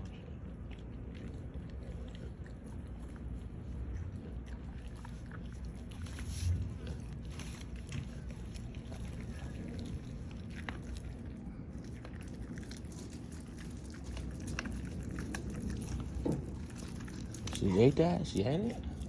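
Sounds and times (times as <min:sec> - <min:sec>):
low rumble: 0:00.0 - 0:17.9
dog chewing raw chicken: 0:00.0 - 0:19.0
bone crunching: 0:11.8 - 0:18.0.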